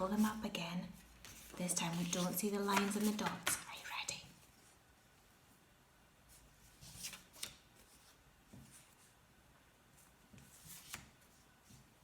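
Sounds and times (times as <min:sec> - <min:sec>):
paper cards rustling: 0:01.2 - 0:03.8.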